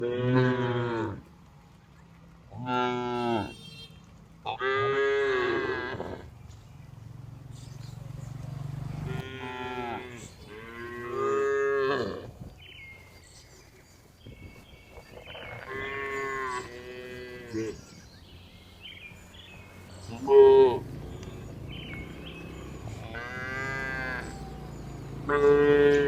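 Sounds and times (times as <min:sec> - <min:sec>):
cows mooing: 0:00.0 - 0:01.2, 0:02.5 - 0:03.6, 0:04.5 - 0:06.3, 0:09.0 - 0:12.3, 0:15.3 - 0:17.8, 0:20.1 - 0:26.0.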